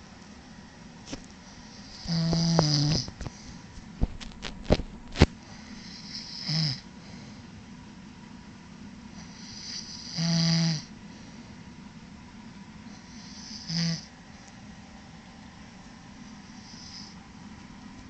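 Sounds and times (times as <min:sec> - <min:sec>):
person snoring: 0:01.8 - 0:03.1, 0:05.7 - 0:06.8, 0:09.2 - 0:10.9, 0:13.0 - 0:14.1.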